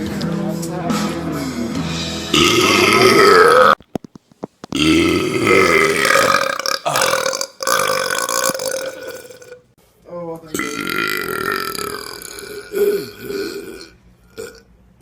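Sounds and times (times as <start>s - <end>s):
loud human burps: 2.3s - 3.8s, 4.7s - 9.6s, 10.6s - 14.7s.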